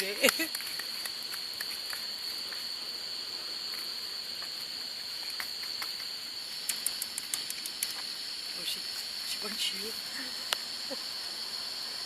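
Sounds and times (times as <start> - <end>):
insects chirring: 0.0 - 12.0.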